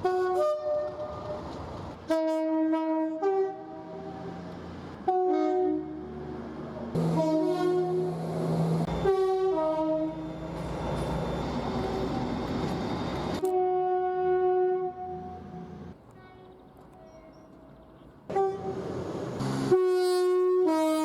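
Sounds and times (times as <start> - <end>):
train two-tone horn: 0.0 - 4.4, 5.0 - 6.3, 7.0 - 8.2, 8.9 - 10.6, 13.4 - 15.8, 18.3 - 21.0
passing train rumble: 0.0 - 21.0.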